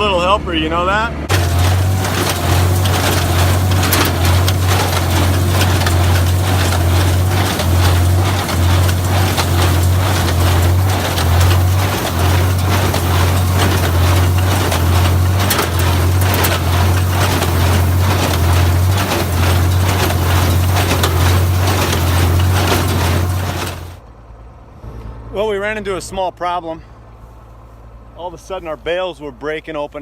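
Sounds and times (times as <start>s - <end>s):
tractor engine hum: 0.0s - 24.0s
hay baler mechanical clatter: 1.3s - 24.0s.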